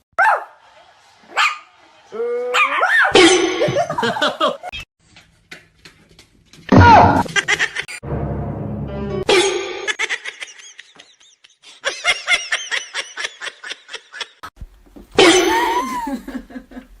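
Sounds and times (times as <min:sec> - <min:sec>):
person laughing: 0:09.9 - 0:14.5, 0:15.2 - 0:17.0
person crying out: 0:15.2 - 0:16.2.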